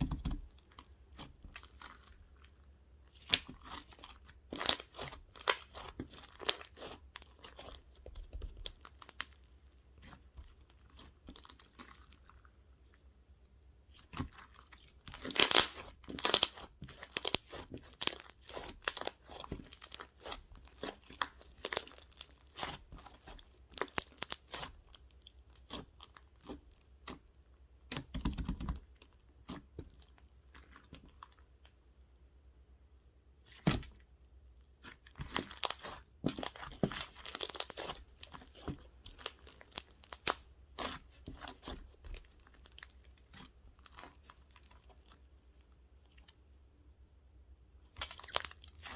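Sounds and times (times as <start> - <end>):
crunching and crinkling: 0.0 - 13.1, 13.9 - 26.9, 34.7 - 46.4, 47.8 - 48.9.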